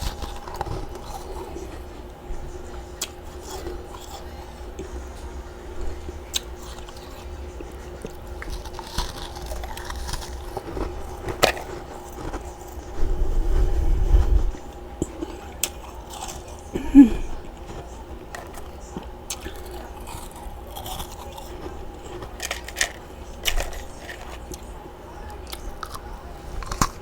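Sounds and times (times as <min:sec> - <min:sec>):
chewing ice chunks: 0:00.0 - 0:01.9, 0:03.0 - 0:04.4, 0:05.9 - 0:13.0, 0:14.6 - 0:16.8, 0:17.4 - 0:27.0
faint steady hum: 0:00.0 - 0:27.0
low rumble: 0:12.8 - 0:14.7.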